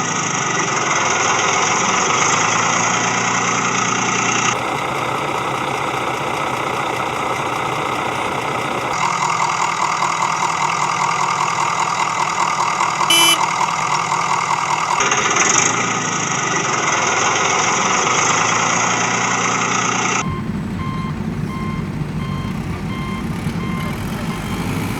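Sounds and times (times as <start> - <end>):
diesel engine running: 0.0 - 24.9
reversing alarm beeping: 13.1 - 13.5, 20.2 - 24.9.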